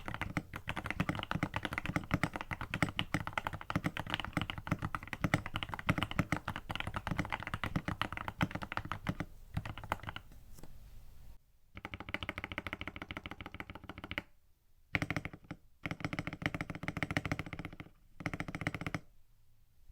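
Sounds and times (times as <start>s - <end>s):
fast mechanical keyboard typing: 0.0s - 10.3s, 11.8s - 14.3s, 14.9s - 19.1s.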